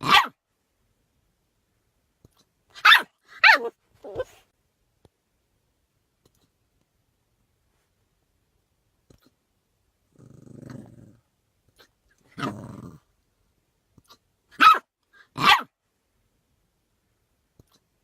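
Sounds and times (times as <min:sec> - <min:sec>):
puppy barking: 0:00.0 - 0:00.4, 0:02.7 - 0:04.4, 0:14.5 - 0:15.7
puppy growling: 0:10.1 - 0:11.3, 0:12.3 - 0:13.1.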